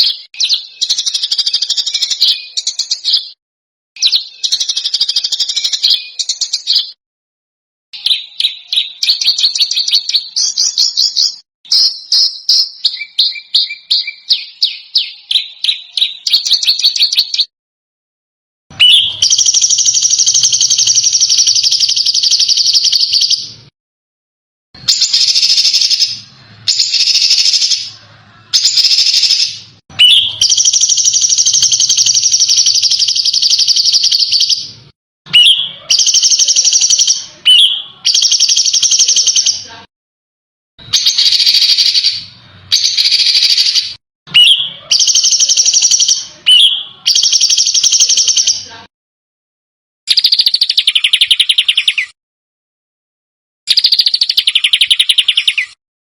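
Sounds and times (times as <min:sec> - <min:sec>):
songbird harsh trills: 0:18.7 - 0:23.5, 0:24.8 - 0:34.6, 0:35.3 - 0:39.6, 0:40.8 - 0:48.6.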